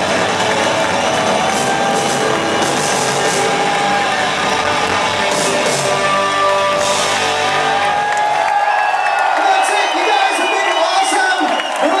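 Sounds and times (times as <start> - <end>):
rock band playing live: 0.0 - 8.6.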